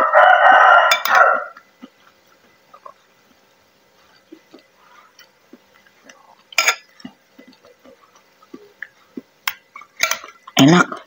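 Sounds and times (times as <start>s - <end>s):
spoon clinking against bowl: 0.9s - 1.2s, 6.6s - 7.0s.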